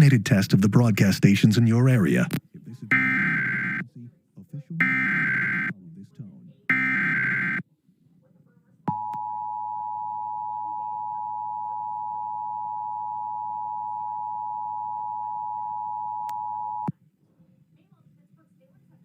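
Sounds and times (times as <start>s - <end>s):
data burst: 2.9s - 3.8s, 4.8s - 5.7s, 6.7s - 7.6s
two-tone attention signal: 2.9s - 3.8s, 4.8s - 5.7s, 6.7s - 7.6s.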